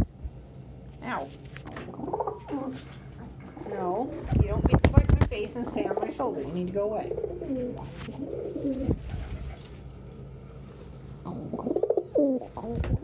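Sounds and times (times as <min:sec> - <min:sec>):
pigeons cooing: 0:01.6 - 0:09.8, 0:11.2 - 0:13.0.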